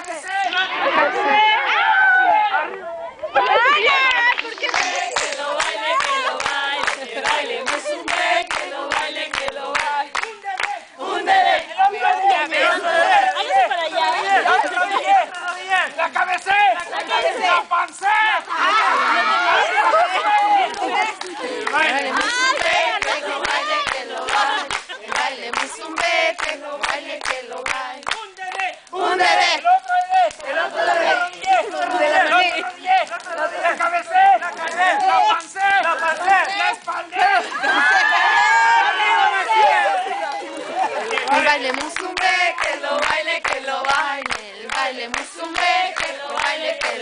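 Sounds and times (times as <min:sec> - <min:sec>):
women singing in chorus: 0:03.5 - 0:15.0, 0:20.8 - 0:33.6, 0:40.9 - 0:47.0.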